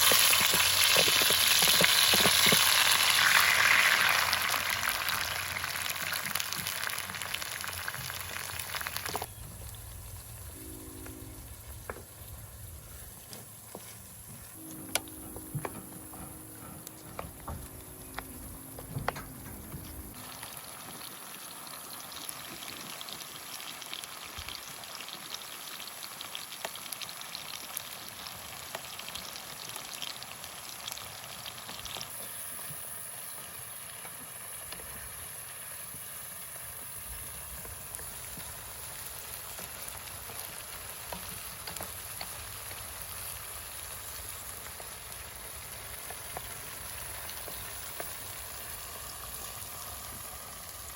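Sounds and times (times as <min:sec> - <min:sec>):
food sizzling in a pan: 0:00.0 - 0:09.4, 0:10.2 - 0:50.9
low hum: 0:09.3 - 0:13.4, 0:14.5 - 0:20.2.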